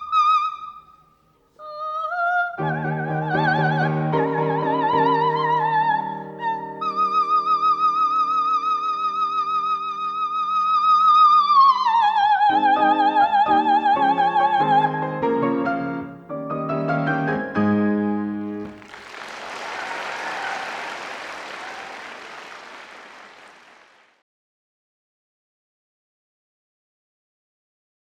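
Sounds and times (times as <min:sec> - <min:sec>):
soprano singing with vibrato: 0:01.5 - 0:15.4
piano chords: 0:02.6 - 0:19.0
audience applause: 0:18.6 - 0:24.2.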